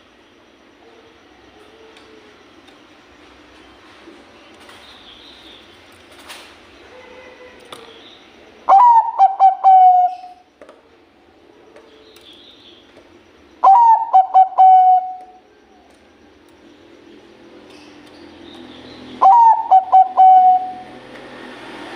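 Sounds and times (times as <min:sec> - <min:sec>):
dove cooing: 0:08.7 - 0:10.4, 0:13.6 - 0:15.5, 0:19.2 - 0:21.0.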